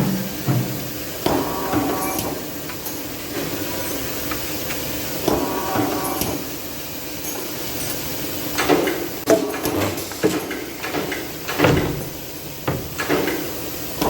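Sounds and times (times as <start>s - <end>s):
metallic clunks and knocks: 0.0s - 1.5s
steady machine hiss: 0.0s - 14.0s.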